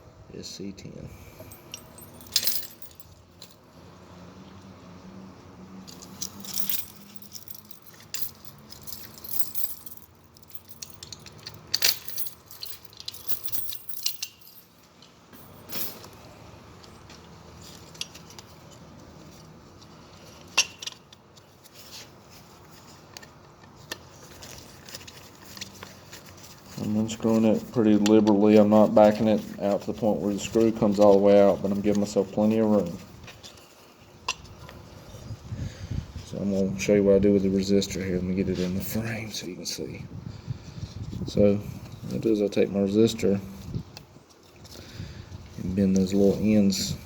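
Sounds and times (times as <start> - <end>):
metal keys jangling: 1.4 - 3.7, 5.8 - 16.2.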